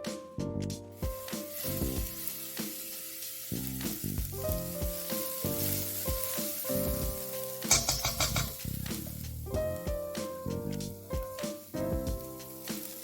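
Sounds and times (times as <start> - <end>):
background music: 0.0 - 13.0
food sizzling in a pan: 0.9 - 13.0.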